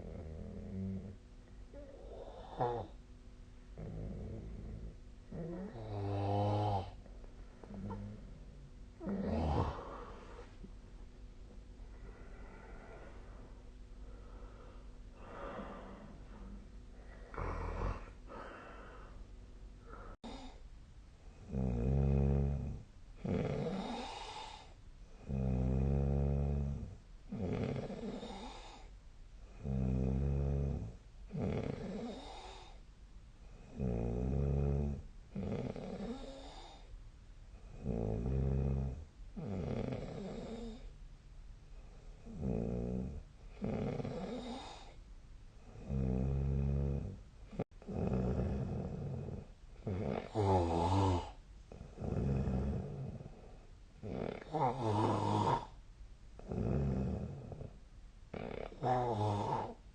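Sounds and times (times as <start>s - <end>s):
person snoring: 0.0s - 3.0s, 3.8s - 7.0s, 7.6s - 8.4s, 9.0s - 10.7s, 12.0s - 19.2s, 21.5s - 28.9s, 29.6s - 32.8s, 33.6s - 36.9s, 37.7s - 40.9s, 42.2s - 45.0s, 45.7s - 55.8s, 56.4s - 59.8s
soft breath: 9.0s - 10.8s, 11.6s - 20.7s.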